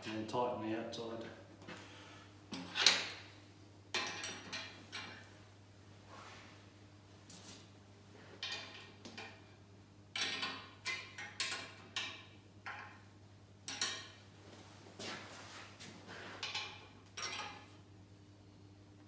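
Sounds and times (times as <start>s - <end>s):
faint hum: 12.4s - 19.0s.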